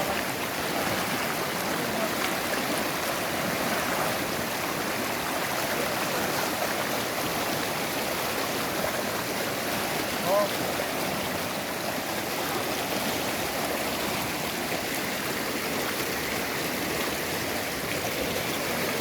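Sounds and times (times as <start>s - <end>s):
river running over stones: 0.0s - 19.0s.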